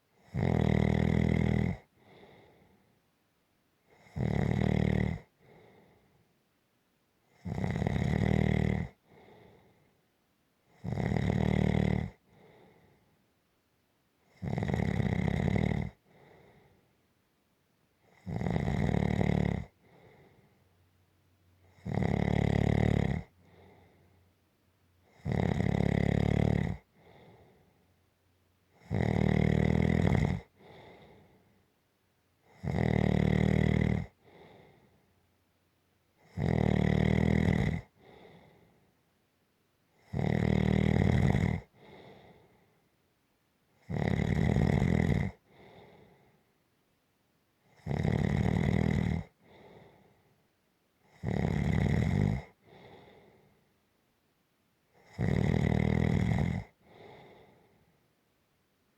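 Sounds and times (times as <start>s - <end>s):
person snoring: 0.2s - 2.5s, 4.0s - 5.3s, 7.4s - 9.4s, 10.8s - 12.8s, 14.4s - 16.6s, 18.1s - 20.3s, 21.7s - 23.9s, 25.2s - 27.4s, 28.8s - 31.3s, 32.5s - 34.8s, 36.2s - 38.4s, 40.1s - 42.4s, 43.8s - 46.1s, 47.8s - 50.0s, 51.1s - 53.4s, 55.0s - 57.6s
faint short breath: 2.0s - 3.0s, 30.6s - 31.6s, 34.2s - 35.0s, 41.8s - 42.8s, 45.5s - 46.5s, 49.4s - 50.3s, 52.6s - 53.7s, 56.8s - 58.0s.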